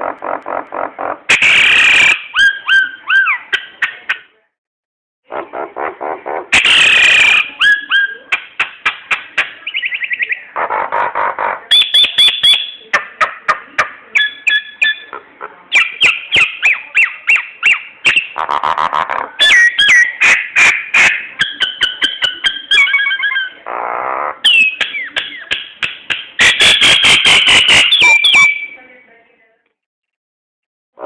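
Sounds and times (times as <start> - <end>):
songbird singing: 9.6 - 10.6, 24.5 - 25.5.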